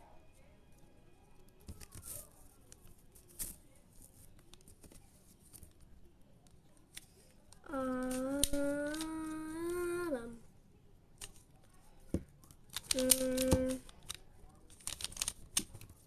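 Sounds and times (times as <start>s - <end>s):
plastic puzzle clicks: 6.8s - 9.9s, 11.2s - 11.5s, 12.1s - 16.0s.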